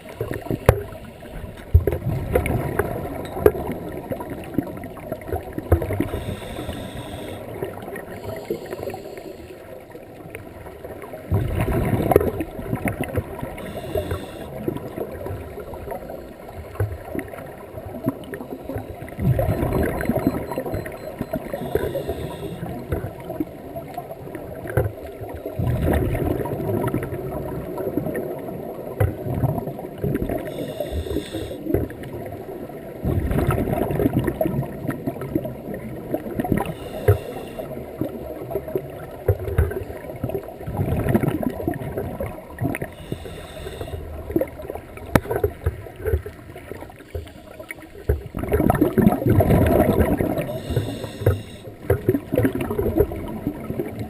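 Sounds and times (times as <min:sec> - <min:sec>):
gurgling exhaled bubbles: 0:00.0 - 0:08.9, 0:10.1 - 0:54.0
regulator breathing hiss: 0:06.1 - 0:07.5, 0:08.2 - 0:09.6, 0:13.6 - 0:14.6, 0:21.6 - 0:22.7, 0:30.4 - 0:31.7, 0:36.6 - 0:37.7, 0:42.9 - 0:44.1, 0:47.1 - 0:47.8, 0:50.4 - 0:51.8.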